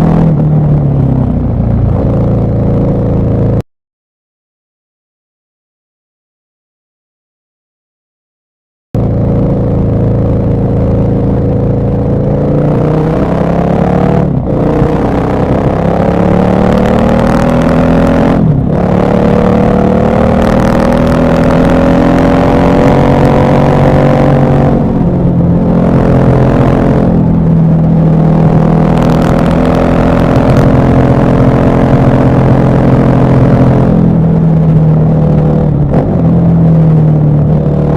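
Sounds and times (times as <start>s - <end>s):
motorcycle engine accelerating: 0.0s - 3.6s, 9.0s - 37.9s.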